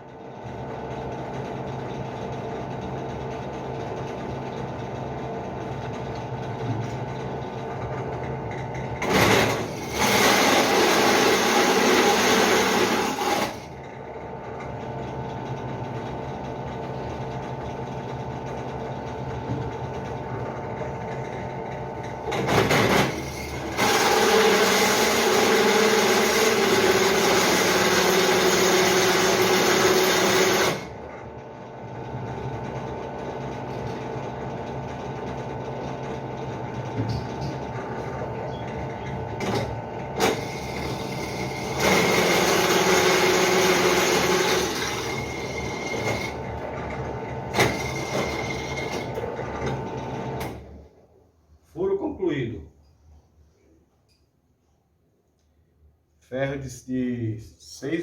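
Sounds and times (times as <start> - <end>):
drill press motor hum: 0.0 - 51.0
drill bit cutting steel: 9.0 - 13.7, 22.8 - 30.9, 40.2 - 46.4.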